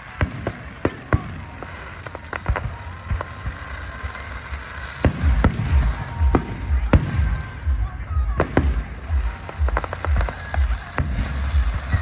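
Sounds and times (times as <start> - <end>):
fireworks bangs and cracks: 0.0 - 12.0
low rumble: 3.0 - 12.0.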